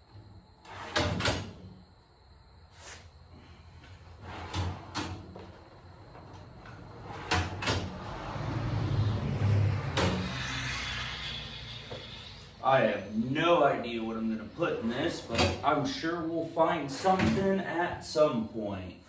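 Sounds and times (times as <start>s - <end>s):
steel drawers sliding open and shut: 0.6s - 1.8s, 3.9s - 8.4s, 9.4s - 10.3s, 14.8s - 15.9s, 16.9s - 17.6s.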